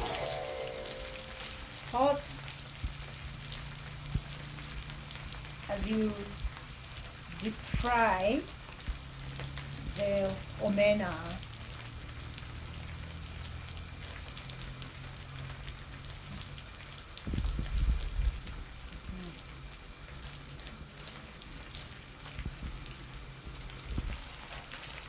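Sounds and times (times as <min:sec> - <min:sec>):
fish sizzling in hot oil: 0:03.0 - 0:25.0.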